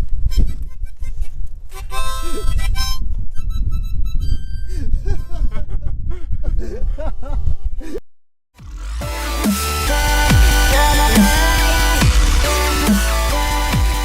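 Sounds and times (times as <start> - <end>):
deep bass: 8.6 - 14.0
reedy melodic lead: 8.6 - 14.0.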